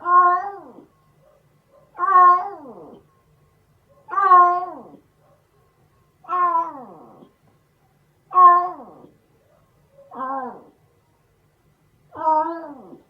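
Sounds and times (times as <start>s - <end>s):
cat meowing: 0.0s - 0.9s, 2.0s - 3.0s, 4.1s - 5.0s, 6.2s - 7.3s, 8.3s - 9.1s, 10.1s - 10.8s, 12.1s - 13.0s.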